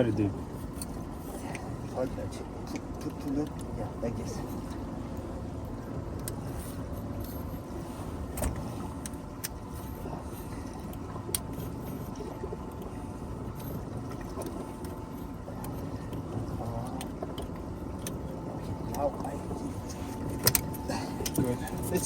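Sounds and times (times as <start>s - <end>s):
boat rumble: 0.0s - 22.0s.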